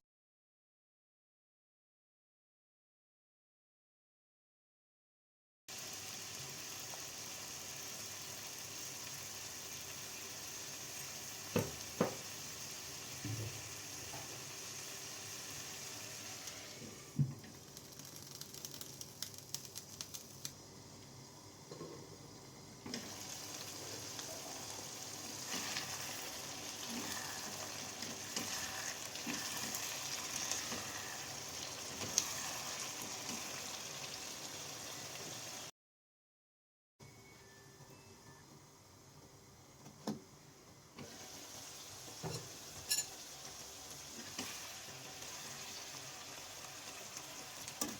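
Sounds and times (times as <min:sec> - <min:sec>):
food sizzling in frying pan: 0:05.7 - 0:35.7, 0:41.0 - 0:47.9.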